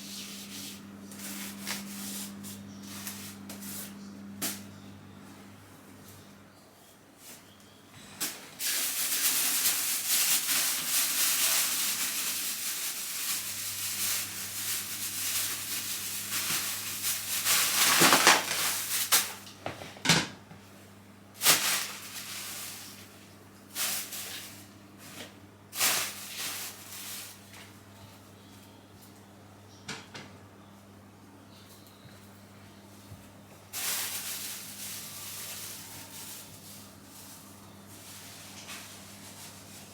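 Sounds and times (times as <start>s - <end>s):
mop swishing on hard floor: 0.0s - 4.6s.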